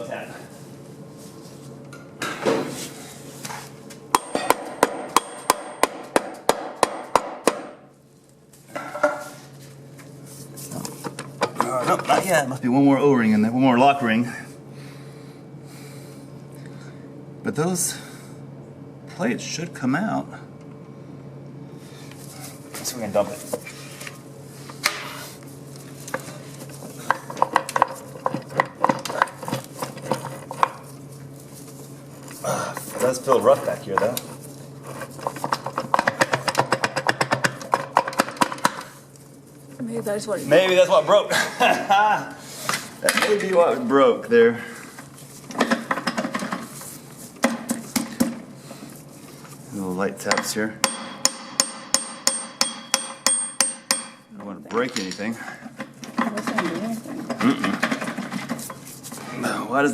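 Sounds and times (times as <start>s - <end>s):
hammer tapping on metal: 4.1s - 7.7s, 50.3s - 54.3s.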